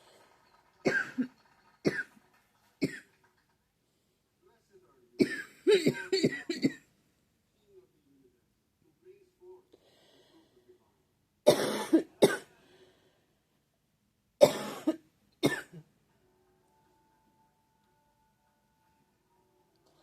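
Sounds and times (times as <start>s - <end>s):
person coughing: 0.9s - 1.3s, 2.8s - 3.0s, 5.2s - 6.8s, 11.5s - 12.5s, 14.4s - 15.8s.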